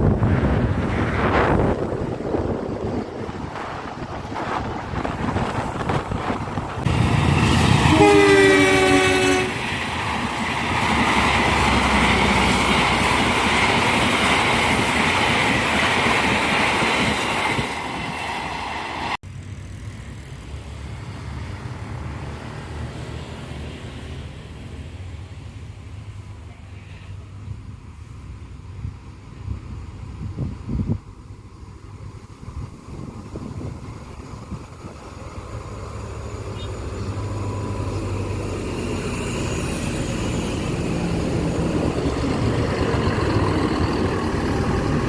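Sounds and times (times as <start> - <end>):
traffic noise: 0.0 - 45.0
multi-note bus horn chord: 7.9 - 9.5
passing vehicles rushing: 19.3 - 26.5, 31.3 - 45.0.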